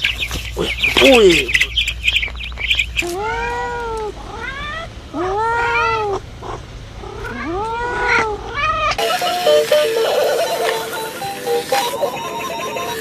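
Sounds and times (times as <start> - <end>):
cat meowing: 3.0 - 6.2, 7.0 - 9.0
music: 9.0 - 13.0.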